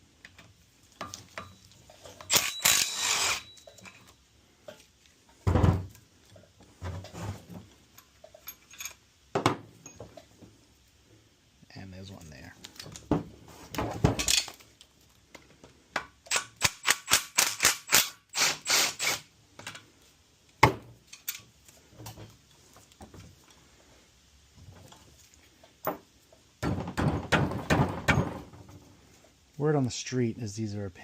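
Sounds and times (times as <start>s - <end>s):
ratchet wrench clicking: 2.3s - 3.5s.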